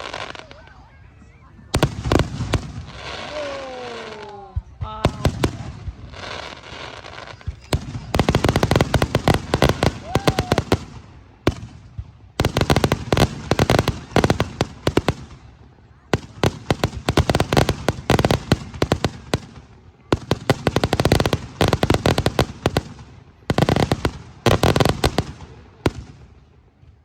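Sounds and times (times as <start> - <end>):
fireworks crackling: 0.0 - 27.0.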